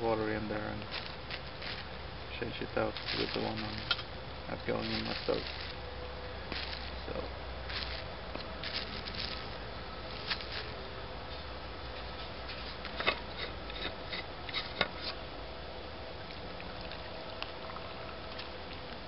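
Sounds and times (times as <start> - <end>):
faint steady hum: 0.0 - 19.0
hands rubbing fruit in metal mug: 2.9 - 4.0, 4.6 - 5.8.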